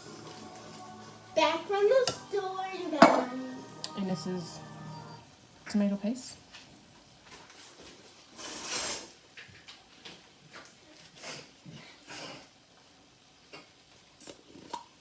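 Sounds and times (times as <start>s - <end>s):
scrape or rustle: 7.3s - 9.2s.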